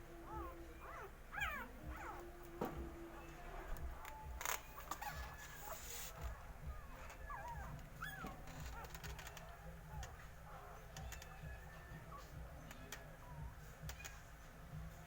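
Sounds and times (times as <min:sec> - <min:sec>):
puppies whining and squeaking: 0:00.0 - 0:14.3.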